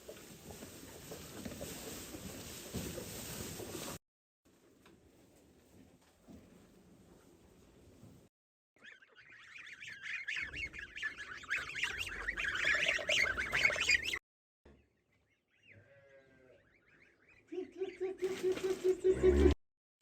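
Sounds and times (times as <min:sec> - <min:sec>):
poultry calling: 0:08.8 - 0:14.2, 0:15.0 - 0:19.6.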